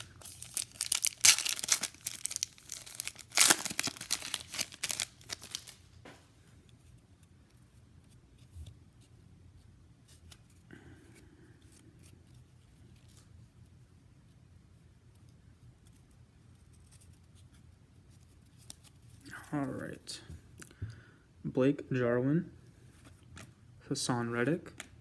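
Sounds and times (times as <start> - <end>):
foil wrapper tearing and crinkling: 0.0 - 5.9.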